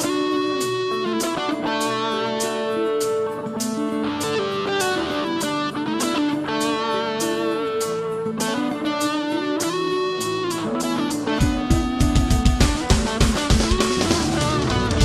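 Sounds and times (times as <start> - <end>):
pop-rock electric guitar: 0.0 - 15.0
steady drum beat: 11.3 - 15.0.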